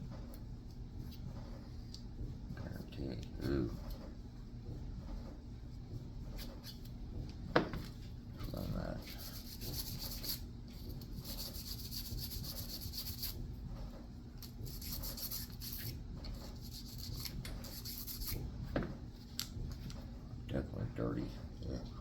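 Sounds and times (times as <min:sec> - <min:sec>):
scratchy scrubbing by hand: 0:08.5 - 0:13.4, 0:14.4 - 0:18.4.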